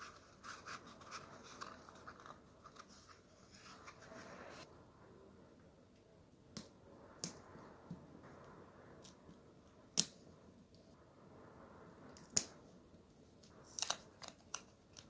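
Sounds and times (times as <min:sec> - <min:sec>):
paper rustling: 0:00.0 - 0:04.6.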